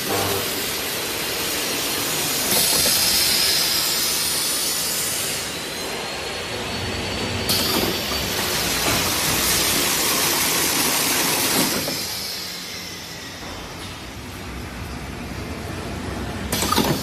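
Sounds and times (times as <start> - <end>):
packaging machine air hiss: 0.0 - 6.4, 7.5 - 13.7.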